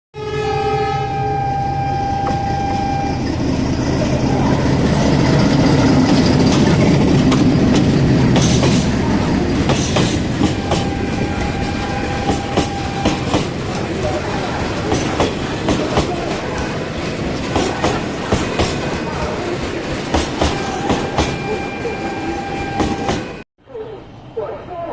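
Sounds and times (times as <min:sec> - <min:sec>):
locomotive horn: 0:00.2 - 0:06.1, 0:08.1 - 0:19.7, 0:20.4 - 0:23.4
locomotive engine drone: 0:00.9 - 0:23.4
wheels clacking over rail joints: 0:05.0 - 0:21.9.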